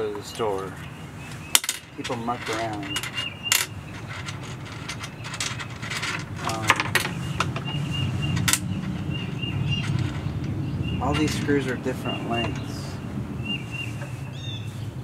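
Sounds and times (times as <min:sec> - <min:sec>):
metal screws clinking: 0:01.5 - 0:07.5, 0:08.4 - 0:11.8.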